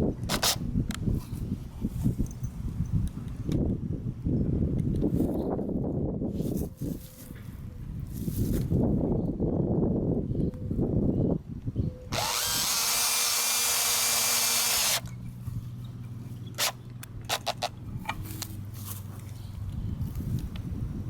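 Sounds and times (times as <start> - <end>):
power drill driving a screw: 12.1 - 15.1.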